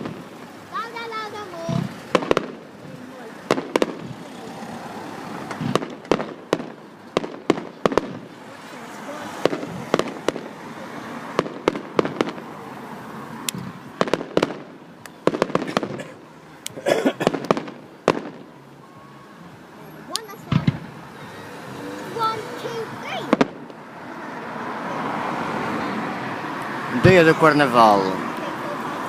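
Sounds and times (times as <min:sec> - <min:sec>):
fireworks bangs and cracks: 0:00.0 - 0:12.6, 0:13.6 - 0:16.2, 0:17.2 - 0:18.6, 0:20.3 - 0:21.0, 0:22.9 - 0:23.8
fireworks crackling: 0:00.0 - 0:18.7, 0:19.6 - 0:29.0.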